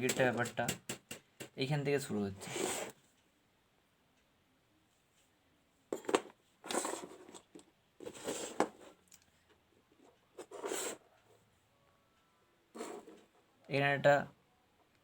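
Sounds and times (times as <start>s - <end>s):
rustling handling noise: 5.9s - 11.0s.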